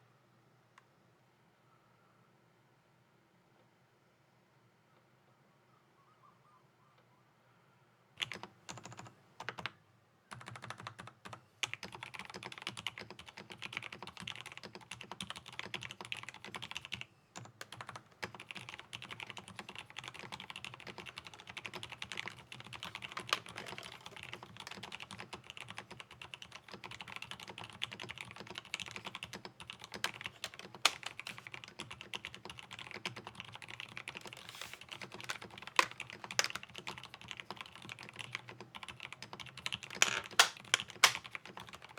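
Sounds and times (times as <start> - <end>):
mechanical keyboard typing: 8.2 - 9.7, 10.3 - 41.9.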